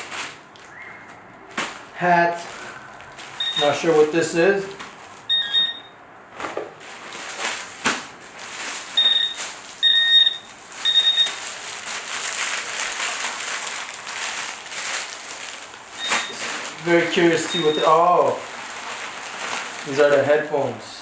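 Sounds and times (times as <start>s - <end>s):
packaging rustling: 0.0s - 21.0s
short electronic beeps: 3.4s - 3.8s, 5.3s - 6.0s, 9.0s - 11.4s.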